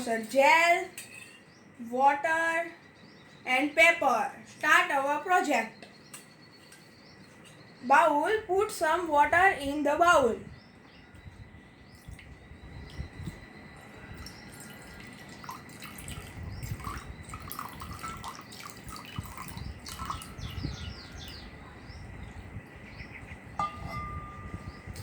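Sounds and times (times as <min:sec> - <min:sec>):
water splashing and dripping: 0:14.2 - 0:20.4
water pouring into glass bowl: 0:14.2 - 0:20.6.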